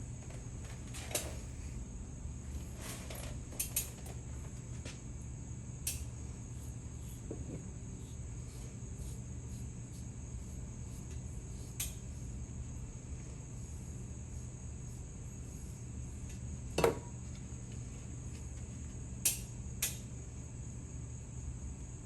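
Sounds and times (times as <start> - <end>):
workshop low hum: 0.0 - 22.0.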